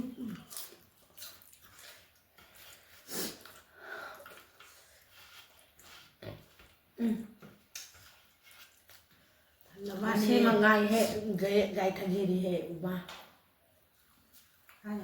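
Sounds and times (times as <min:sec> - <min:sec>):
chewing and mouth noises: 0:00.0 - 0:06.2.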